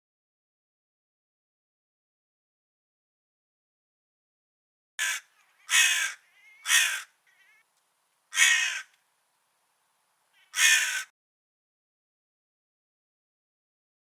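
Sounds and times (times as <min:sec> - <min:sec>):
crow cawing: 0:05.0 - 0:07.7, 0:08.3 - 0:09.0, 0:10.4 - 0:11.1.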